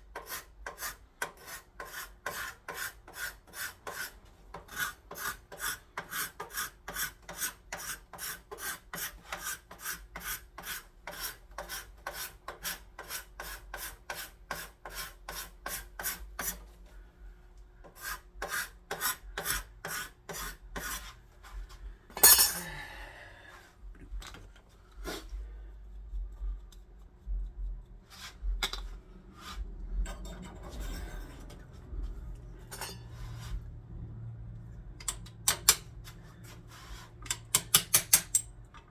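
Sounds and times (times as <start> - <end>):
hand file scraping metal: 0.0 - 16.7, 17.8 - 22.6, 28.1 - 28.5, 29.4 - 31.8, 32.6 - 33.6.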